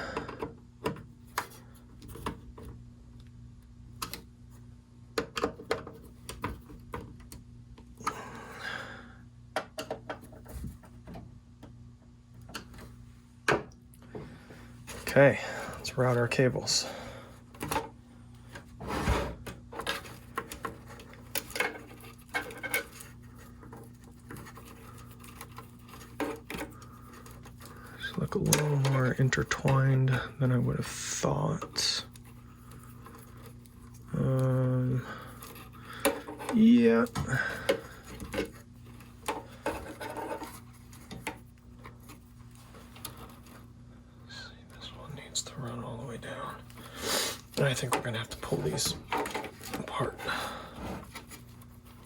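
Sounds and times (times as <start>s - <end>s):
faint low hum: 0.0s - 52.0s
cables rubbing and scraping: 18.8s - 43.8s.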